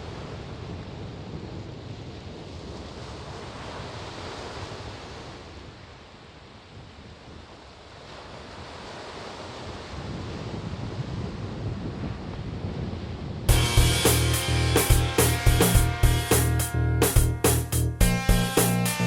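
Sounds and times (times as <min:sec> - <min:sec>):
wind buffeting microphone: 0:00.0 - 0:05.7, 0:09.6 - 0:14.7
waves: 0:00.0 - 0:15.4.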